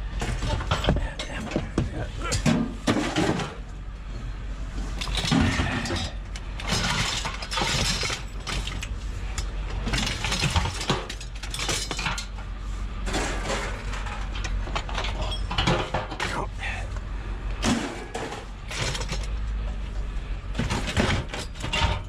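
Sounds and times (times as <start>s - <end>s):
steady low hum: 0.0s - 22.0s
scrap metal clanking and scraping: 0.1s - 16.8s, 17.6s - 19.9s, 20.5s - 22.0s.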